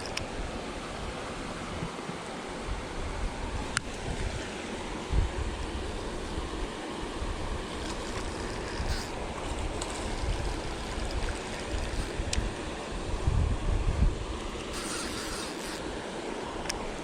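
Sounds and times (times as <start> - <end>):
wind on microphone: 2.6 - 15.8.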